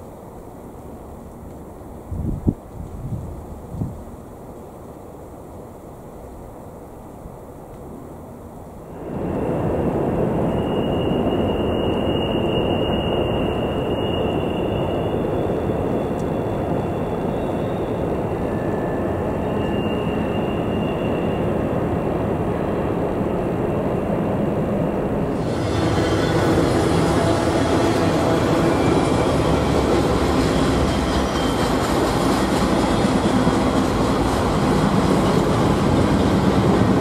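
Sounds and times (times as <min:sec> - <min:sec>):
wheel squeal: 0:10.4 - 0:21.7, 0:25.4 - 0:33.5.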